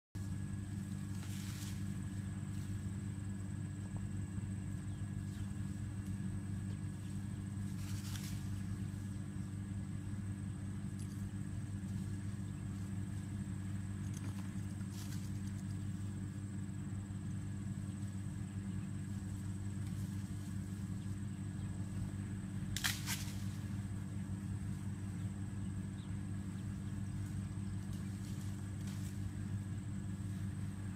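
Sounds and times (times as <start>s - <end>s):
engine idling drone: 0.2s - 30.9s
brief crackle: 22.7s - 23.6s.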